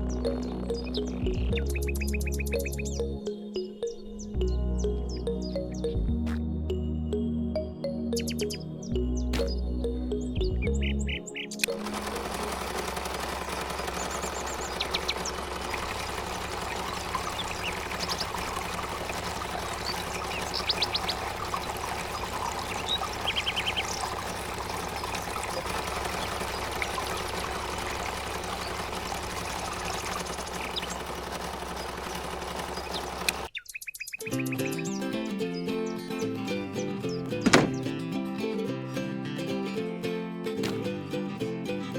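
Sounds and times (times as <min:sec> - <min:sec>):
bird chirps: 0:00.0 - 0:06.2, 0:07.0 - 0:11.8, 0:13.4 - 0:32.0, 0:32.6 - 0:36.1.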